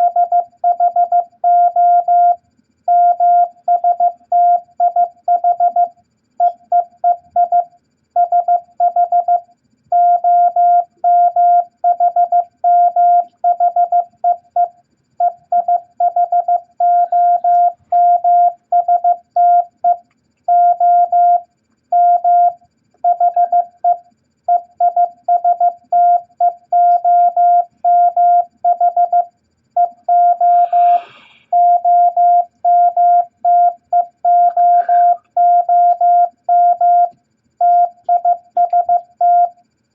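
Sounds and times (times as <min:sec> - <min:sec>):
morse code beeps: 0:00.0 - 0:39.6
brief noise: 0:30.4 - 0:31.6.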